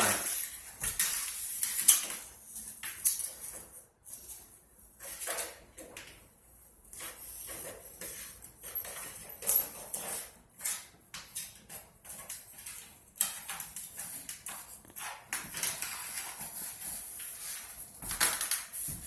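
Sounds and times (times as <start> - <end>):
pencil scratching on tile: 6.9 - 18.0.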